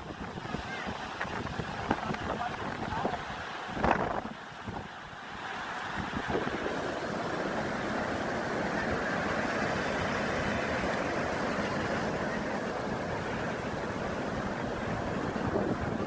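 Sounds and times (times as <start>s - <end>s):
strong wind on microphone: 0.0s - 4.9s, 5.9s - 7.0s, 14.5s - 16.0s
surf breaking on shore: 0.0s - 16.0s.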